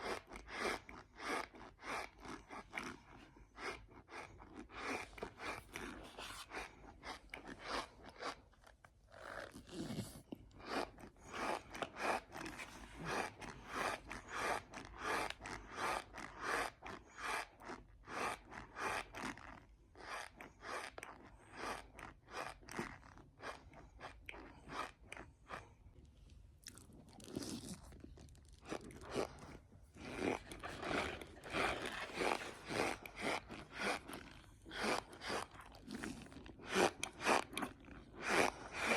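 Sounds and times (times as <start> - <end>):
person chewing squeaky crunches: 26.6 - 38.9.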